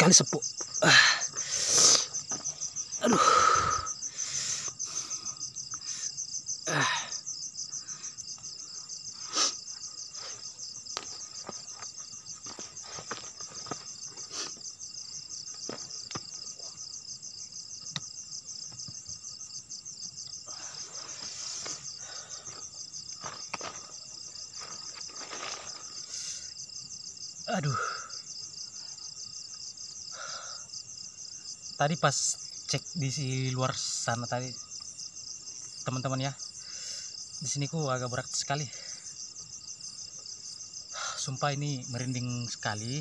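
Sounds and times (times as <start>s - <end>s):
night insects chorus: 0.0s - 43.0s
rustling: 22.5s - 26.1s.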